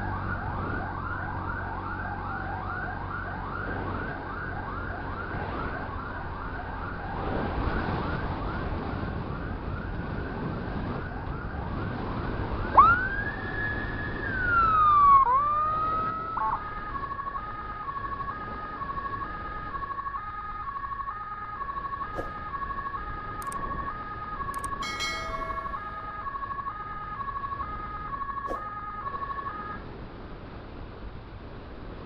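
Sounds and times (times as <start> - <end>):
electronic emergency siren: 0.0 - 30.0.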